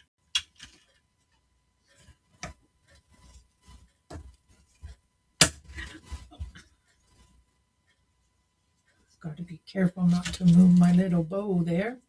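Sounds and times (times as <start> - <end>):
plastic parts clicking and tapping: 0.0 - 1.1.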